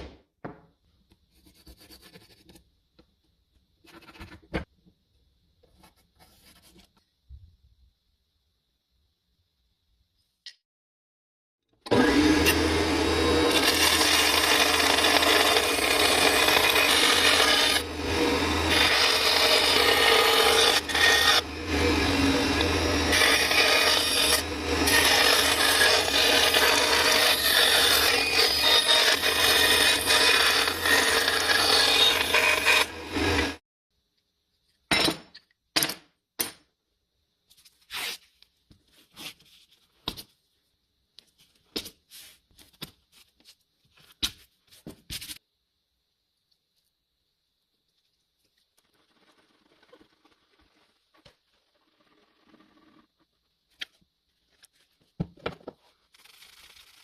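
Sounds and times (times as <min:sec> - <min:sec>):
power tool grinding: 0:11.9 - 0:33.6.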